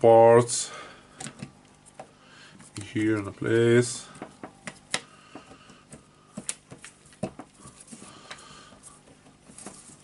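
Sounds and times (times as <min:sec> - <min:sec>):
light clicks and knocks of parts: 0:01.2 - 0:03.4.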